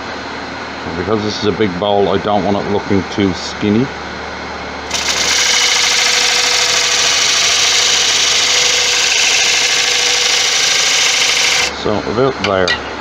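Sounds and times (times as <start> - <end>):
parting tool cutting wood: 4.9 - 11.7
wood lathe humming: 4.9 - 11.8.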